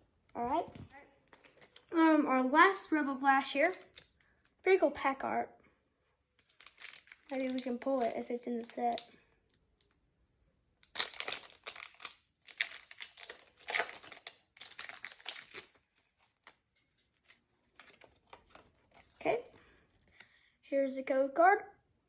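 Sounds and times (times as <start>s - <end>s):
faint handling sounds: 0.6s - 2.0s, 11.2s - 20.4s
foil wrapper crinkling and tearing: 3.6s - 4.6s, 6.4s - 10.0s, 10.8s - 19.2s.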